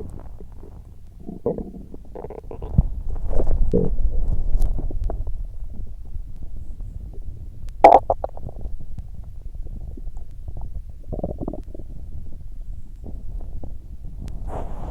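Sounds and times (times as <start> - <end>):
loud stomach gurgle: 0.0 - 6.0, 7.0 - 12.4
stomach rumbling: 0.0 - 14.9.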